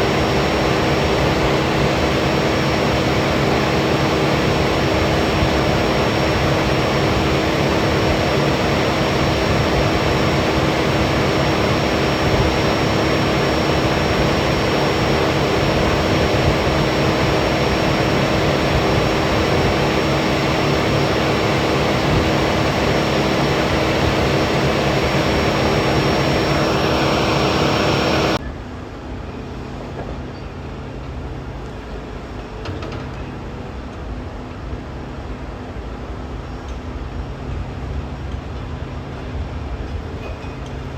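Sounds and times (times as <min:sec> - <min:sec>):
heavy engine running: 0:00.0 - 0:30.3
engine whine: 0:00.0 - 0:40.9.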